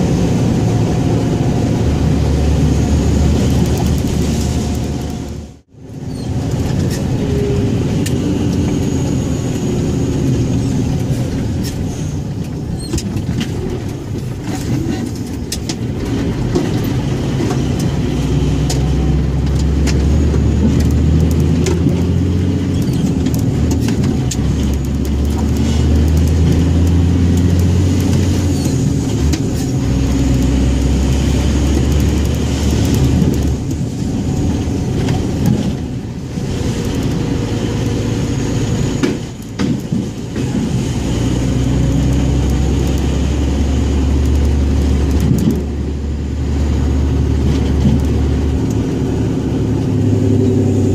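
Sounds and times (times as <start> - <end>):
diesel truck engine running: 0.0 - 50.9.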